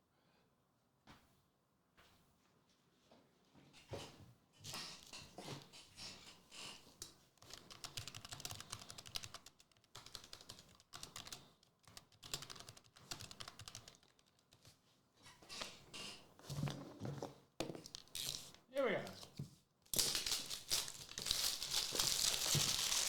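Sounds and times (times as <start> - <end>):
typing on computer keyboard: 7.4 - 14.7.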